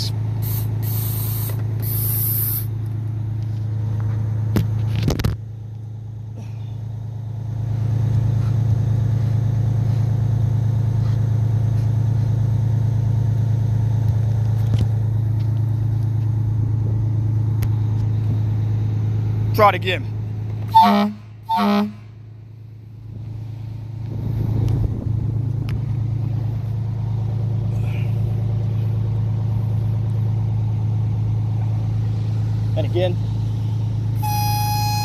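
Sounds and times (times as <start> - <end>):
vehicle engine idling: 0.0 - 35.0
air hiss burst: 0.4 - 2.7.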